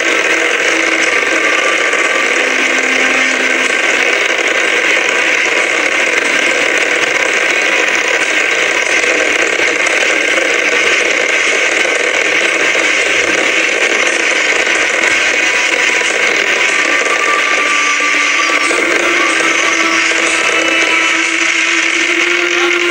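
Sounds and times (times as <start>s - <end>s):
fireworks crackling: 0.0s - 22.9s.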